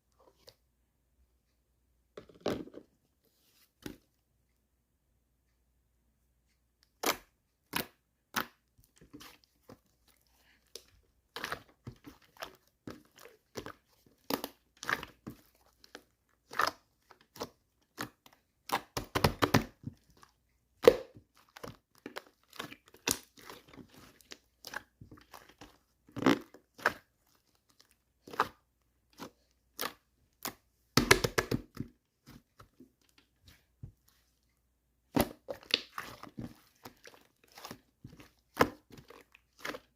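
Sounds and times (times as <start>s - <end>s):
slime popping and crackling: 20.8s - 27.1s, 28.2s - 31.9s, 35.1s - 39.9s.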